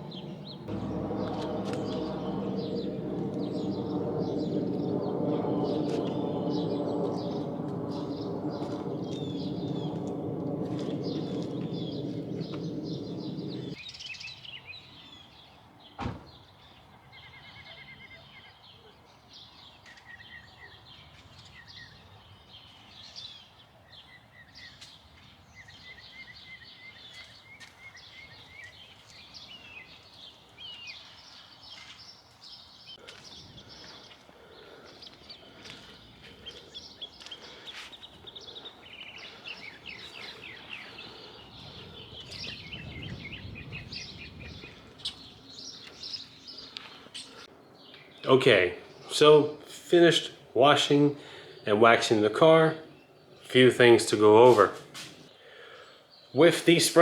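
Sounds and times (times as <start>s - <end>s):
faint outdoor background noise: 0.0s - 57.0s
small birds chirping and trilling: 0.0s - 57.0s.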